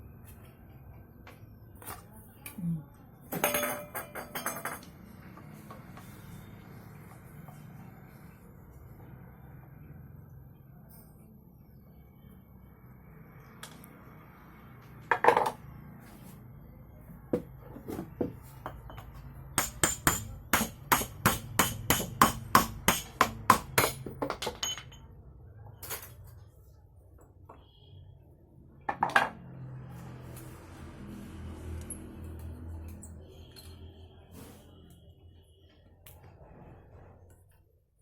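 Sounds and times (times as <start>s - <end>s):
hammer tapping metal: 18.7s - 24.9s.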